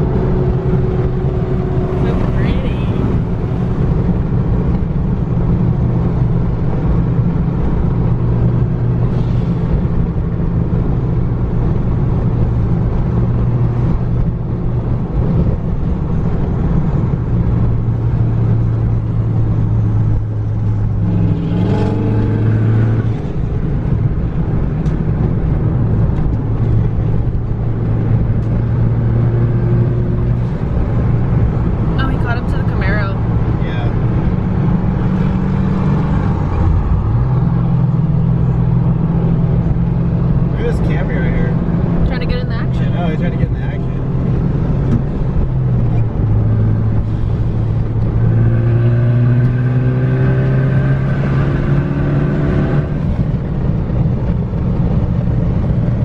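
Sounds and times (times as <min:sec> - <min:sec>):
brief rising tone: 0:00.0 - 0:04.3
car engine droning: 0:00.0 - 0:56.0
road noise: 0:00.0 - 0:56.0.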